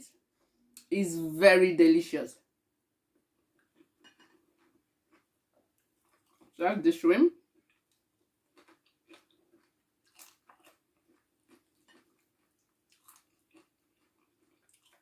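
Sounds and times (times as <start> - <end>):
person chewing: 3.1 - 6.6, 7.4 - 15.0.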